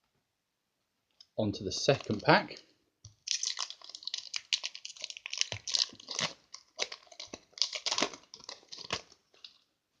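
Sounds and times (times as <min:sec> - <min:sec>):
foil wrapper crinkling: 0:03.2 - 0:09.7.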